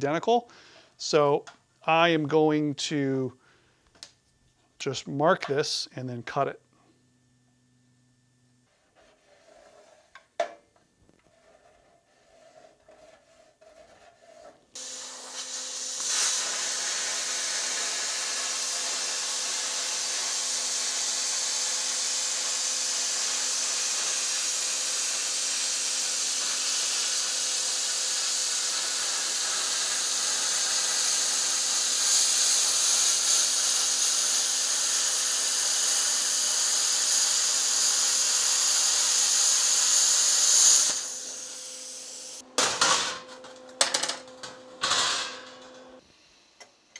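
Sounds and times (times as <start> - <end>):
plasma cutter hissing: 14.8 - 42.4.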